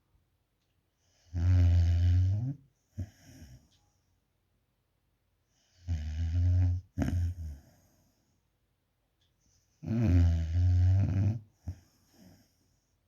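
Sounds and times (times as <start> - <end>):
puppy snoring: 1.1 - 3.7, 5.6 - 7.8, 9.8 - 12.6
soft breath: 11.5 - 13.0.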